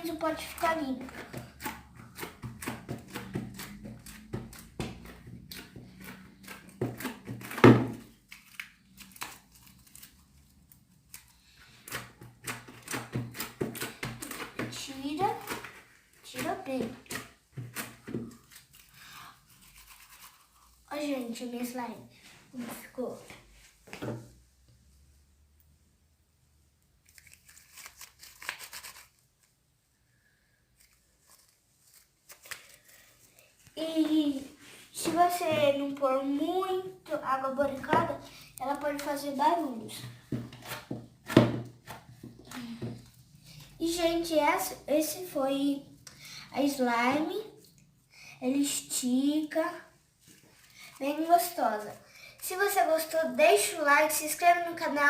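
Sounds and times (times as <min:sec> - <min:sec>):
spoon scraping slime in a pot: 0:00.0 - 0:10.4, 0:11.1 - 0:21.0.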